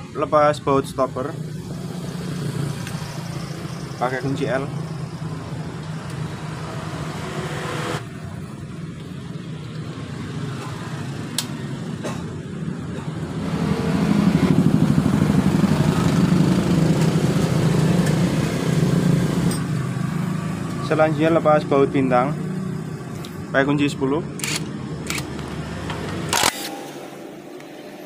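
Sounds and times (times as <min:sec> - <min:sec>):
engine running: 0:01.3 - 0:23.5
sharp clicks: 0:24.4 - 0:26.7.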